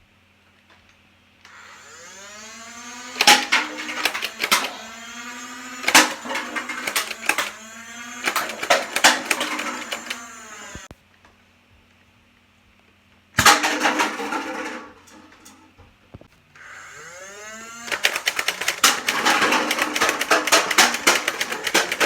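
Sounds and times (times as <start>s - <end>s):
toy blaster flywheels whining: 1.5s - 10.9s, 16.6s - 22.0s.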